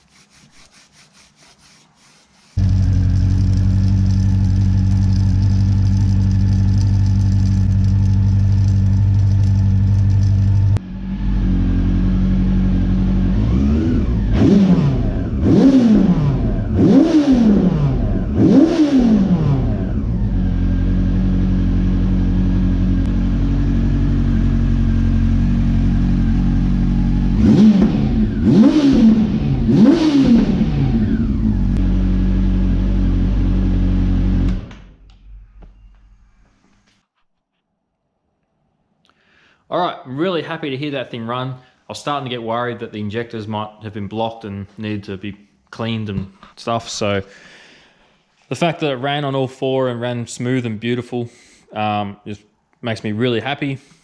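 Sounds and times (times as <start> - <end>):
motorcycle engine idling and revving: 2.6 - 35.8.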